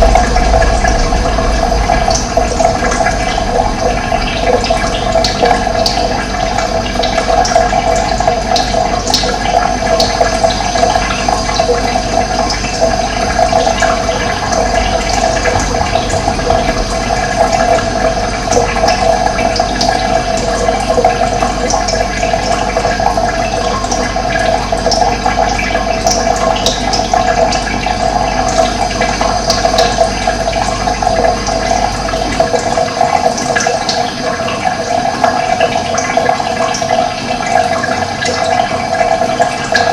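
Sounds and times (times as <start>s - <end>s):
low rumble: 0.0s - 23.4s
running water: 0.0s - 39.9s.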